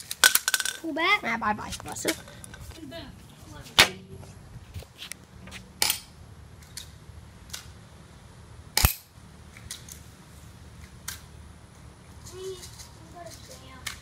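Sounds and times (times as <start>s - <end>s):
airsoft pistol clicks and snaps: 8.8s - 10.0s.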